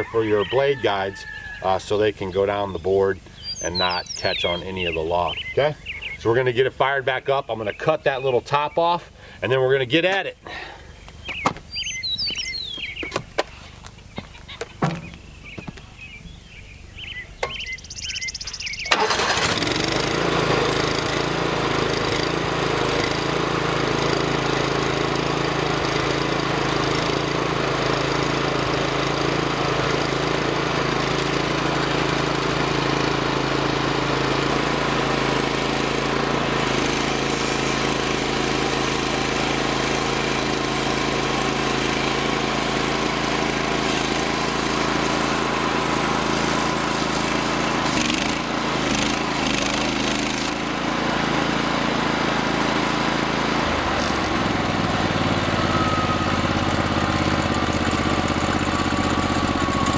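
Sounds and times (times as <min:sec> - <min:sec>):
sawmill engine running: 0:00.0 - 0:09.6, 0:17.0 - 0:59.9.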